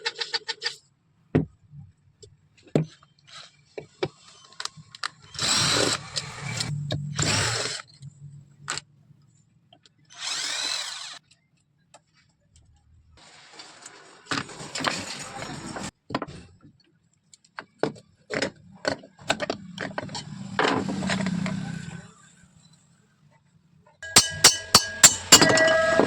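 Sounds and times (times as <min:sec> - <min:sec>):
handheld power tool running: 0:05.4 - 0:07.9, 0:10.1 - 0:11.2, 0:24.0 - 0:26.0.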